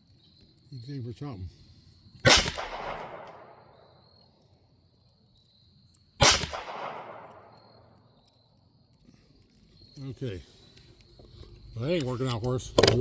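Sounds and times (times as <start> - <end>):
pistol shots with echo: 2.2 - 3.9, 6.2 - 7.9.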